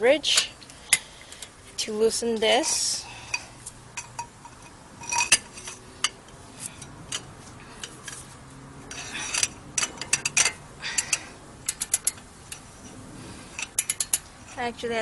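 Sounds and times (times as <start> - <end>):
socket ratchet clicking: 9.4 - 12.6, 13.6 - 14.3.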